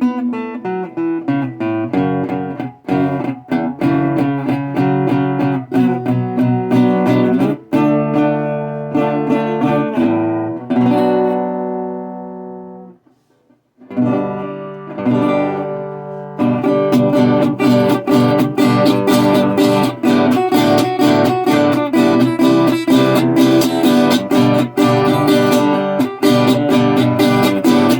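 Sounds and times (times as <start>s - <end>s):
resonator guitar picking: 0.0s - 13.1s, 13.8s - 27.9s.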